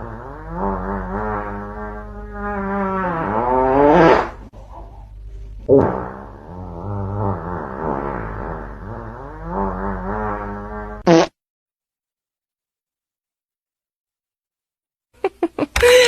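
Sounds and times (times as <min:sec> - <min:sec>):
fart sound effect: 0:00.0 - 0:04.5, 0:05.6 - 0:11.4.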